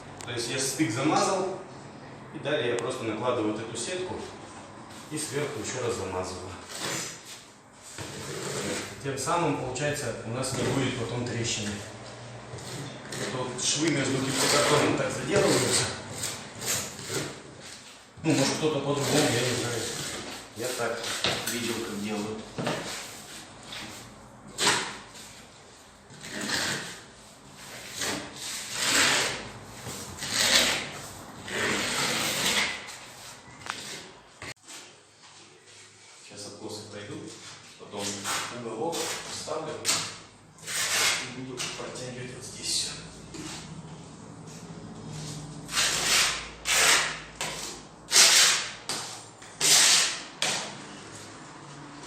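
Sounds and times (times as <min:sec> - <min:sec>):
drywall spatula scraping filler: 0:06.4 - 0:09.6, 0:12.6 - 0:25.4, 0:26.1 - 0:34.9, 0:37.3 - 0:41.9, 0:45.1 - 0:51.2.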